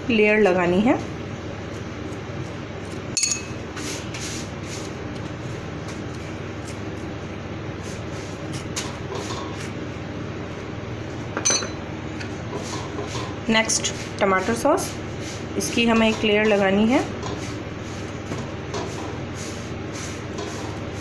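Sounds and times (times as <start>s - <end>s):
low background hum: 0.0s - 21.0s
utensil clinking against dish: 3.2s - 3.6s, 11.4s - 11.8s.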